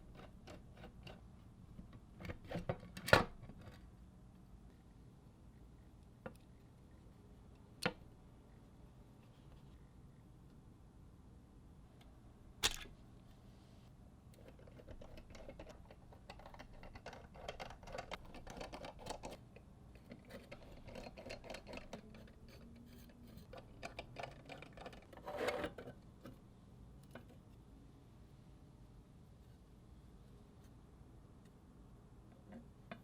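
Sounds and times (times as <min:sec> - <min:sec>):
plastic and metal parts clicking: 0:12.6 - 0:13.0, 0:14.8 - 0:19.4.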